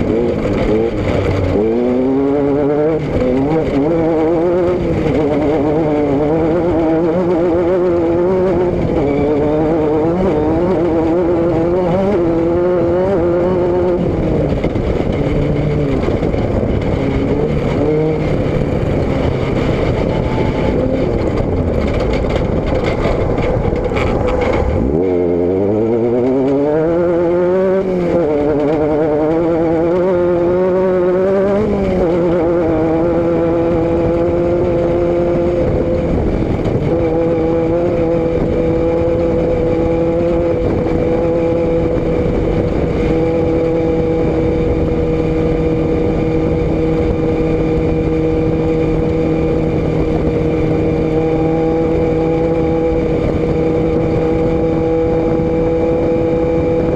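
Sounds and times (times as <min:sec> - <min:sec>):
road and wind noise: 0:00.0 - 0:56.9
vehicle engine and exhaust: 0:00.0 - 0:56.9.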